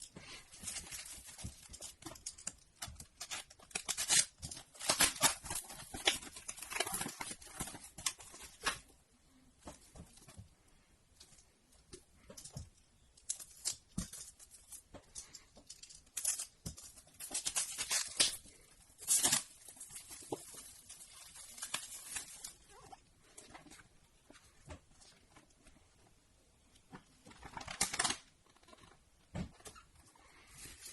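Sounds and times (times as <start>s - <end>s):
packaging rustling and tearing: 0.3s - 8.8s, 15.7s - 23.8s.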